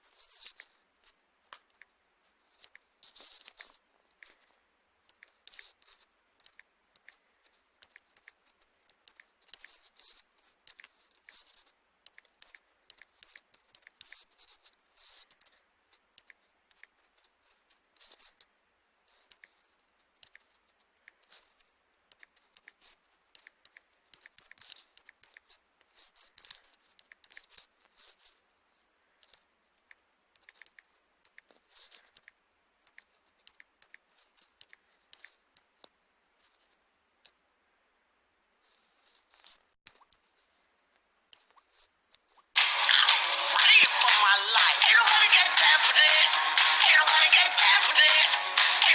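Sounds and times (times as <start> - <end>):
faint scratchy clicks and crackles: 0.0 - 37.4.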